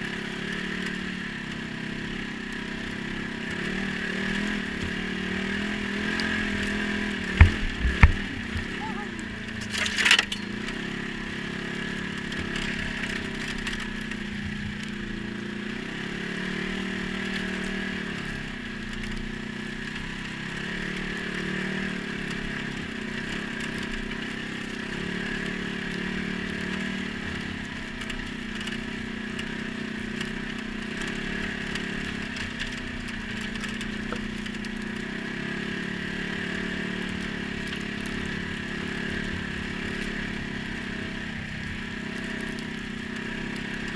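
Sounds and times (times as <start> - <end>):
atv engine running: 0.0 - 43.9
short clatter: 9.5 - 10.5.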